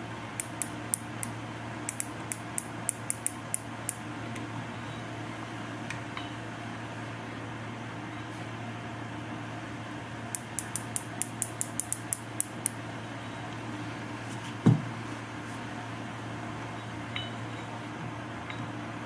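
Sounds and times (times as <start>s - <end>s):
low steady hum: 0.0s - 19.0s
small sharp metallic clicks: 0.4s - 4.0s, 10.3s - 12.8s
dull knock: 14.6s - 14.9s.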